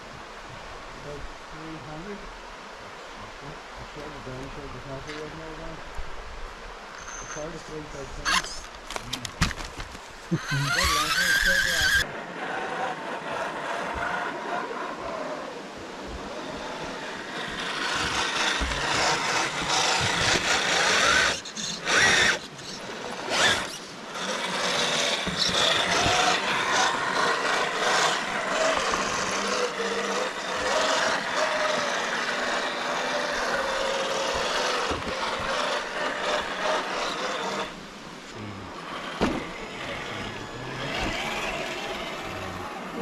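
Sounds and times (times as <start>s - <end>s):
truck scraping over rock: 7.0s - 15.2s, 16.2s - 43.0s
rc truck motor whining: 8.2s - 9.6s, 10.3s - 15.6s, 16.2s - 43.0s.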